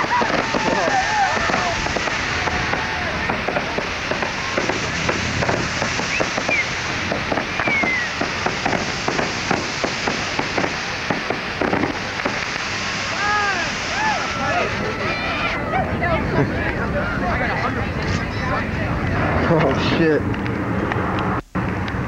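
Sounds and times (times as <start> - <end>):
firecrackers popping: 0.0 - 15.4
steady background hiss: 0.0 - 22.0.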